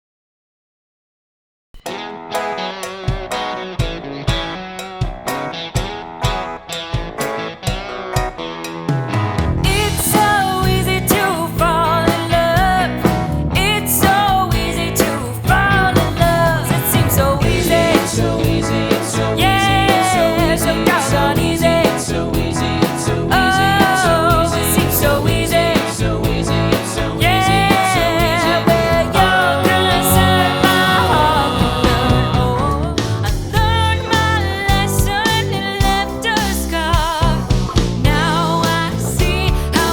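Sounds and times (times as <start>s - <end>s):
drums: 1.8s - 39.9s
guitar: 1.8s - 39.9s
bass: 8.9s - 39.9s
wavering lead melody: 14.6s - 34.7s.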